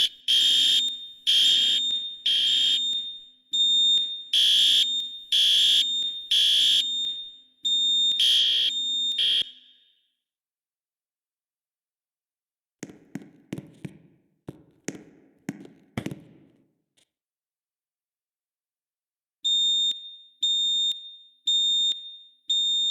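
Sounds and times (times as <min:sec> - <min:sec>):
fire alarm horns blaring: 0:00.0 - 0:10.1, 0:19.5 - 0:22.9.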